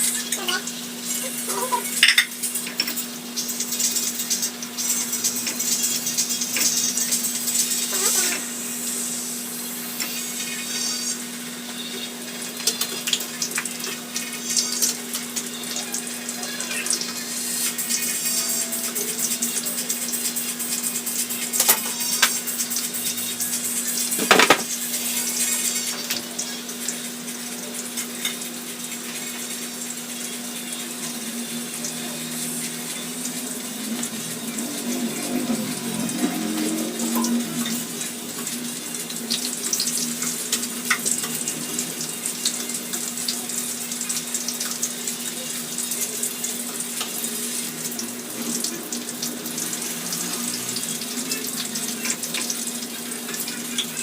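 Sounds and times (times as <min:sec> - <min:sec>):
tap running into a sink: 0:24.2 - 0:24.8.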